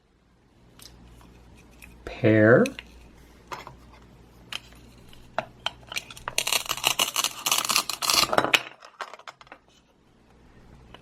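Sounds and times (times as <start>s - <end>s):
velcro tearing apart: 6.3s - 8.3s.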